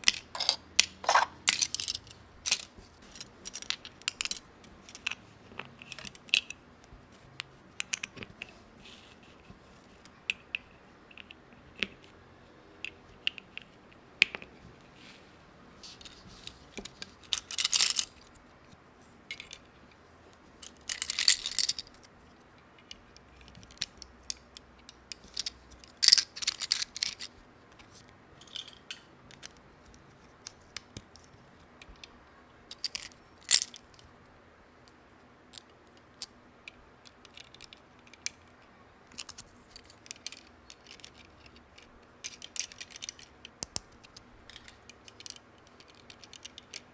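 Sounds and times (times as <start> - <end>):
plastic toy pieces clicking: 0.0 - 5.2, 16.8 - 18.3, 20.6 - 22.1, 25.1 - 27.3, 32.7 - 34.0, 39.1 - 46.9.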